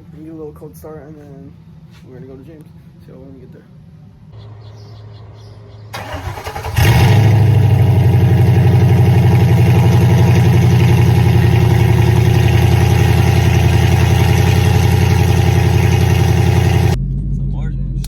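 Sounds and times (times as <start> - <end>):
car engine running loudly: 6.0 - 17.0
car starter cranking: 6.0 - 17.0.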